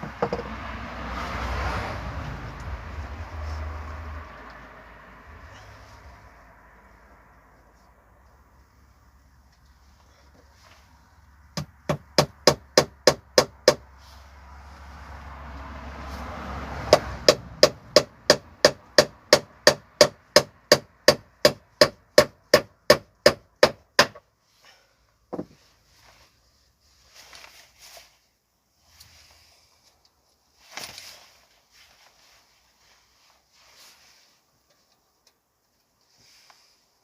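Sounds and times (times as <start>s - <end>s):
hammer driving nails into wood: 11.6s - 13.8s, 16.9s - 24.2s.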